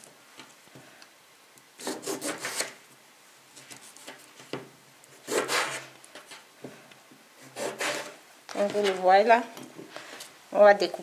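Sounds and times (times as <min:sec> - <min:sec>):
knife sawing through lemon: 0:05.2 - 0:05.8, 0:07.5 - 0:08.2.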